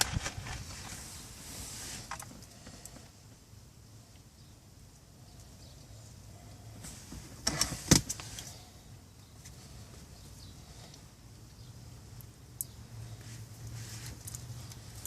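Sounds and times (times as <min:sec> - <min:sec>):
faint handling noise: 0:00.0 - 0:03.2.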